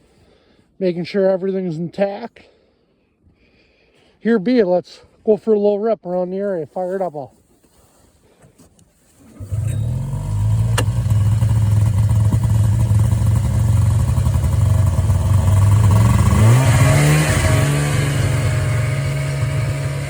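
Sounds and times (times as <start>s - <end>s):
snowmobile engine idling: 9.2s - 20.0s.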